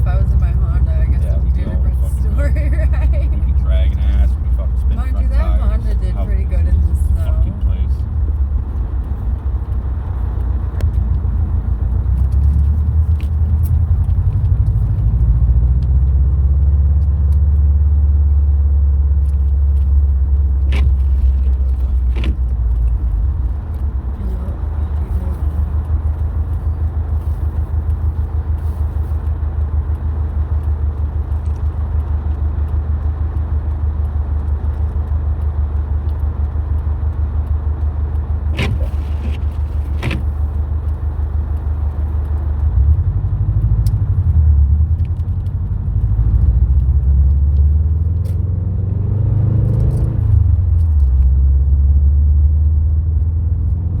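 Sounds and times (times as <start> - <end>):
car engine and road noise: 0.0 - 54.0
sharp clicks: 8.1 - 44.3.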